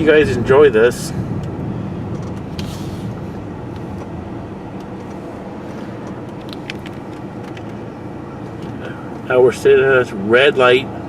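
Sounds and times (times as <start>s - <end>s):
engine and road rumble in car: 0.0s - 11.0s.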